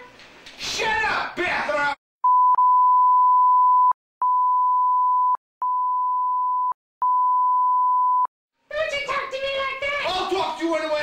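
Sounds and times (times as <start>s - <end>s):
censor bleep tone: 2.2s - 8.3s.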